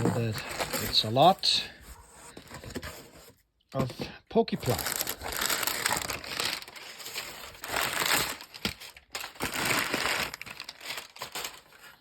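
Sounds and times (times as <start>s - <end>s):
packing material crinkling: 4.6s - 12.0s.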